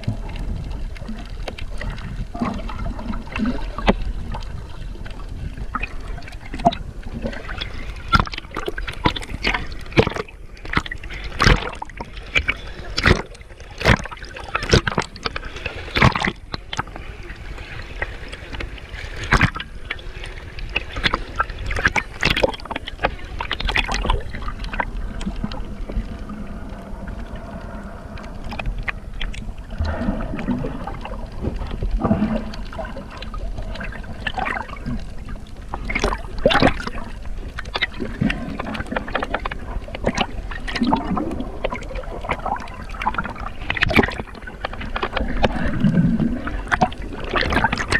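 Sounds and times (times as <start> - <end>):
water splashing and sloshing: 0.0 - 47.9
low rumble: 22.6 - 34.3.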